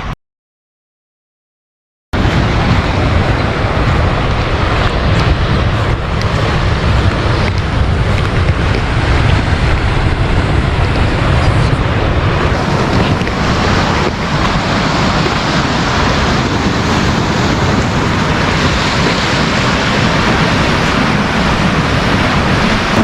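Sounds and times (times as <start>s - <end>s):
waves washing on shore: 2.2s - 23.0s
wind across microphone: 2.2s - 23.0s.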